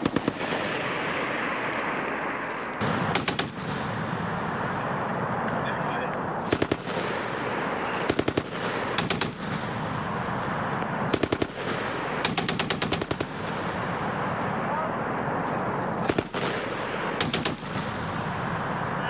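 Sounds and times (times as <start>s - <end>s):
machine gun bursts: 0.0s - 4.4s, 6.4s - 10.4s, 11.0s - 14.5s, 15.7s - 18.5s.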